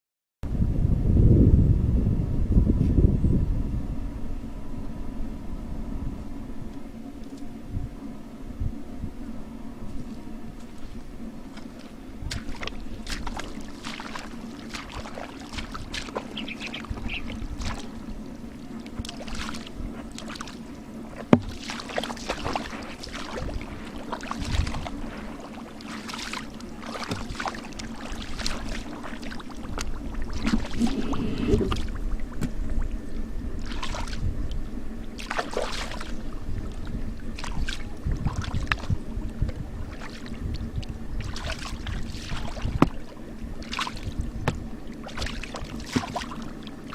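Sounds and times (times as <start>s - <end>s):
steady low hum: 0.4s - 46.9s
shallow water splashing: 9.9s - 46.9s.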